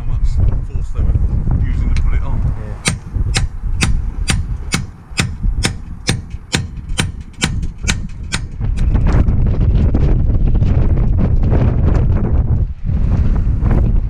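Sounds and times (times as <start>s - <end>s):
hammer striking metal: 2.8s - 8.9s.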